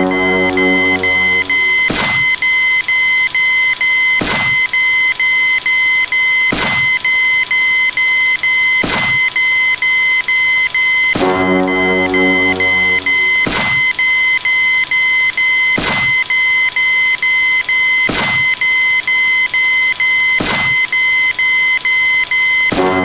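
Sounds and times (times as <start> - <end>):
low buzzy tone: 0.0 - 2.5, 11.2 - 14.0
high beeping tones: 0.0 - 2.6, 11.2 - 14.2.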